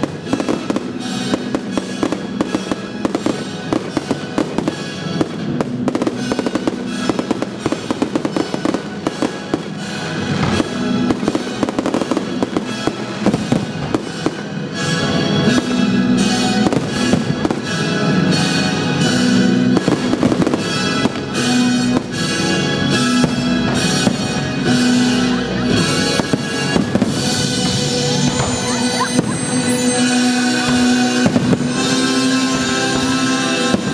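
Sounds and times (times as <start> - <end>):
fireworks bursting and crackling: 0.0 - 33.9.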